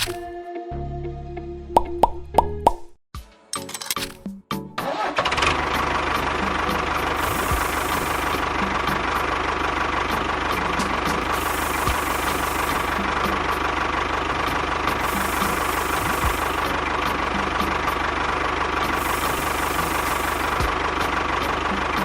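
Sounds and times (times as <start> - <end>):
small motor running: 6.2 - 9.3, 10.1 - 13.6, 14.2 - 17.8, 18.8 - 21.1.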